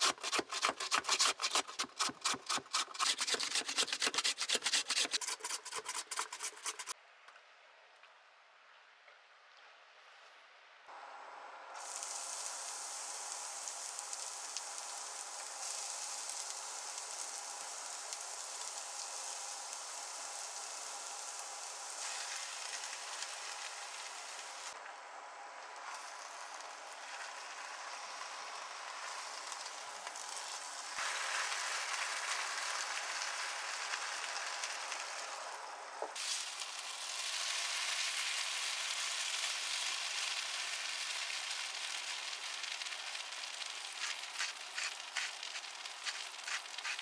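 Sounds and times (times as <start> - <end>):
food sizzling in oil: 11.8 - 24.8, 25.9 - 35.6, 36.2 - 47.0.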